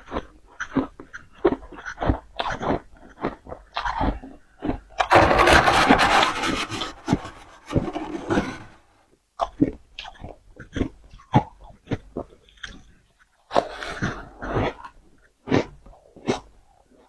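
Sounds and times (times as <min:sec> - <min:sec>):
loud rasping crunch: 0:05.1 - 0:08.8.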